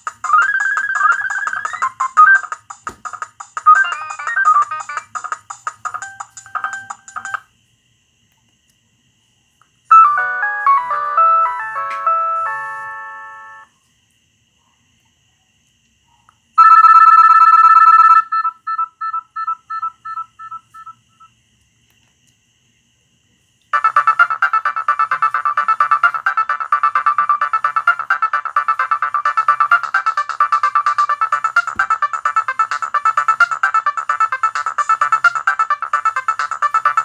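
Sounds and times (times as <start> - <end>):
phone chime of stepping notes: 9.9 - 13.6
fading beeps: 17.7 - 21.0.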